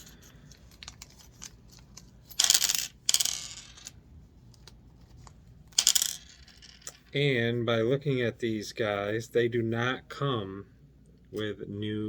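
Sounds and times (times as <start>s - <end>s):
steel parts clinking and rattling: 0.0s - 4.0s.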